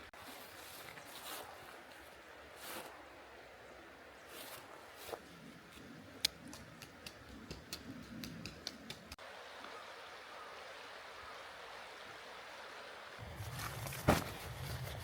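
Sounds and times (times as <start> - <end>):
stream rushing: 8.9 - 15.0.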